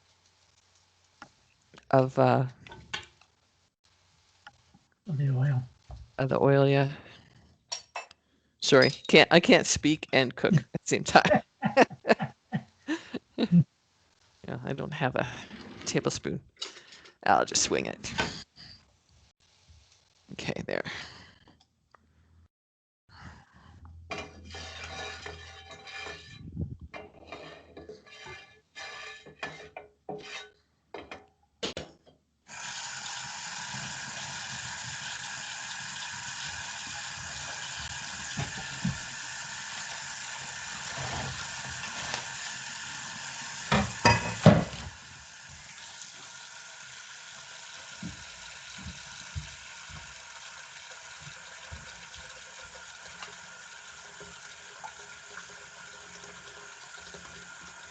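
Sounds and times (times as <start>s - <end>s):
chicken sizzling in hot oil: 0.0s - 1.9s, 32.5s - 57.9s
utensils clinking against pan: 7.7s - 9.2s, 24.1s - 26.3s, 43.7s - 44.7s.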